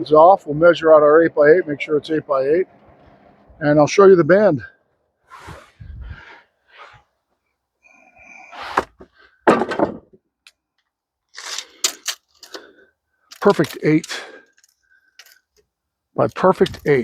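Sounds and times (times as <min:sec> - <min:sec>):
boards scraping: 0:05.3 - 0:07.1, 0:08.4 - 0:10.2
sharp wooden knocks: 0:08.8 - 0:10.2.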